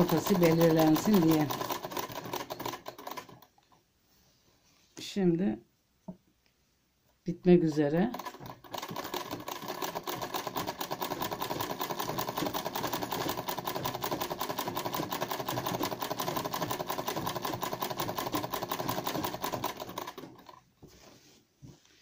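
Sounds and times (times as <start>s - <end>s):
sewing machine running fast: 0.0s - 3.4s, 8.1s - 20.6s.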